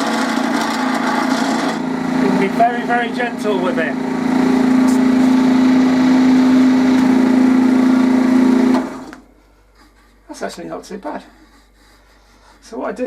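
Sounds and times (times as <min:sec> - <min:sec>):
lathe motor humming: 0:00.0 - 0:09.3.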